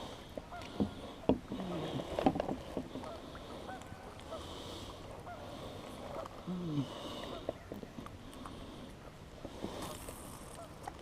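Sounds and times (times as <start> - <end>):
faint bird calls: 2.9 - 9.2.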